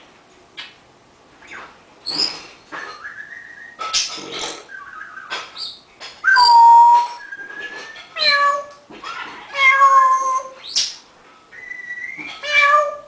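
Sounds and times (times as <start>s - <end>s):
parrot whistling and clicking: 4.8s - 8.8s
parrot squawking: 6.2s - 7.2s, 8.0s - 11.0s, 11.7s - 13.0s.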